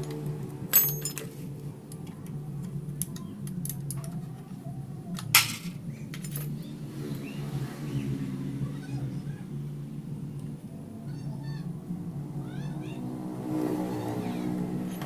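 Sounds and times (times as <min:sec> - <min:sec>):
metal tools clinking: 0:00.0 - 0:04.5, 0:05.2 - 0:06.7.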